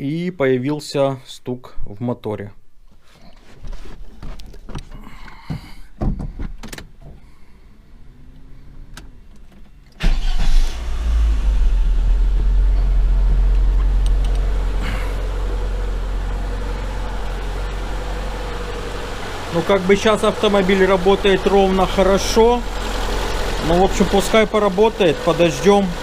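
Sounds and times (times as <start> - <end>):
car engine starting and idling: 7.6 - 26.0.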